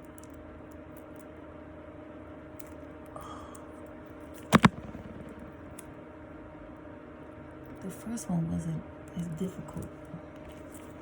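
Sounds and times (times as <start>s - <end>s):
sharp knocks: 4.5s - 5.8s
faint steady hum: 4.5s - 6.1s.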